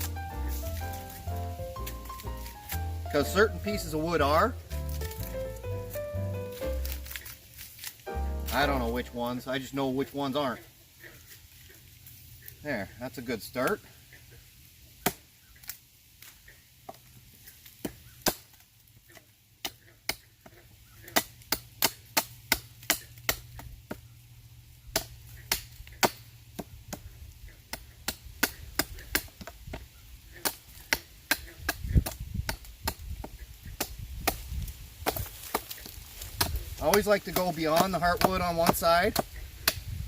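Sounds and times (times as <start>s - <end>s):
blade chopping wood: 0.0s - 5.4s, 6.5s - 8.9s, 15.0s - 15.2s, 21.1s - 24.0s, 24.9s - 27.1s, 30.4s - 40.0s.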